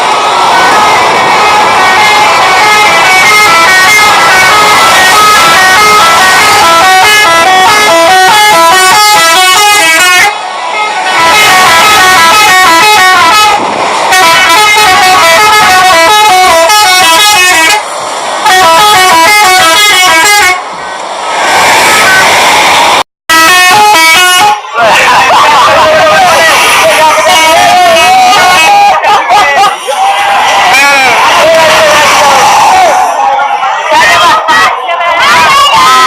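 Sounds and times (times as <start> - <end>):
musical air horn tune: 1.4 - 20.7, 23.3 - 24.7.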